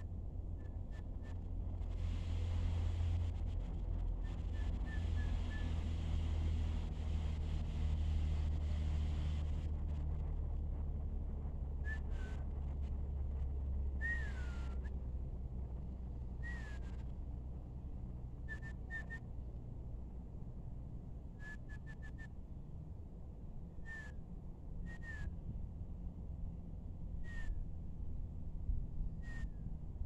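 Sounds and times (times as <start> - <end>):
steady low rumble: 0.0 - 30.0
songbirds whistling: 14.0 - 15.0, 16.4 - 17.0, 18.5 - 19.2, 23.8 - 24.2, 24.9 - 25.3, 27.2 - 27.6, 29.2 - 29.7.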